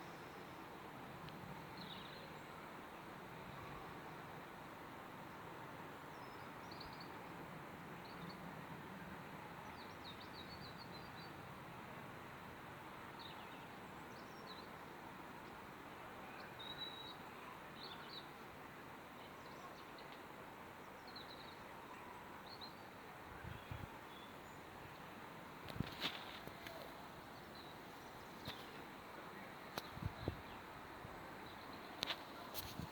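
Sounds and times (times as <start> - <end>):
small birds chirping: 25.7 - 32.9.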